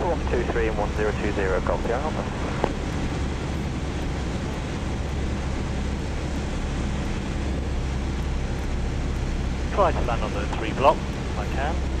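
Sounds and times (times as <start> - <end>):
light aircraft engine drone: 0.0 - 12.0.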